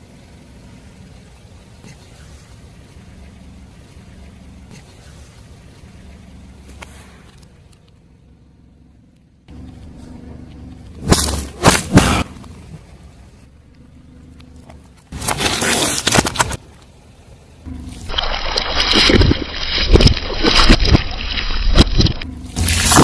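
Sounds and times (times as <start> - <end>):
car engine idling: 0.0 - 18.2, 22.0 - 23.0
tyre crushing objects: 11.0 - 12.6, 15.1 - 16.6, 18.2 - 23.0.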